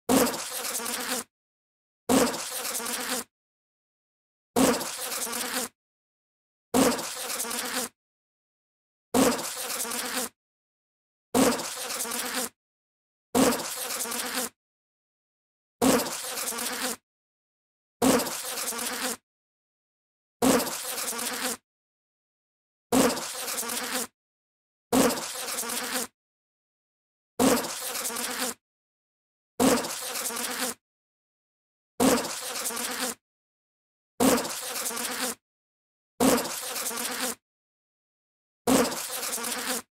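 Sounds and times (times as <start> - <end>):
bee buzzing: 0.1 - 1.3, 2.1 - 3.3, 4.6 - 5.8, 6.8 - 8.0, 9.2 - 10.4, 11.4 - 12.6, 13.4 - 14.6, 15.8 - 17.0, 18.0 - 19.2, 20.4 - 21.6, 22.9 - 24.1, 25.0 - 26.1, 27.4 - 28.6, 29.6 - 30.8, 32.0 - 33.2, 34.2 - 35.4, 36.2 - 37.4, 38.7 - 39.9.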